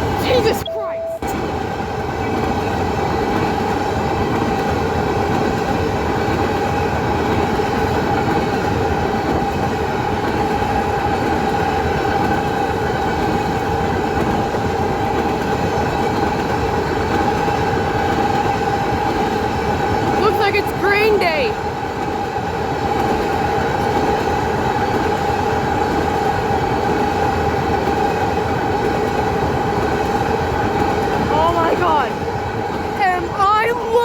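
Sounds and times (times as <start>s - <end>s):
steady high tone: 0.2s - 1.3s
freight train cars rolling on rails: 1.2s - 34.0s.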